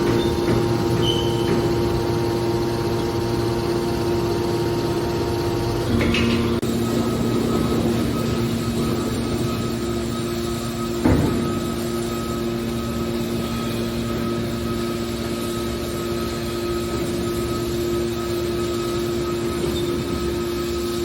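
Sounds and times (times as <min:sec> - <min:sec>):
baler machine hum: 0:00.0 - 0:21.0
metal clank: 0:05.9 - 0:06.7.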